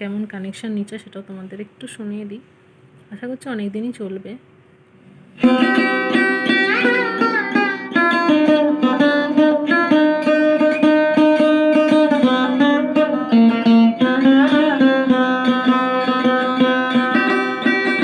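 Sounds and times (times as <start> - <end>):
plucked melody with pitch bends: 5.4 - 18.0.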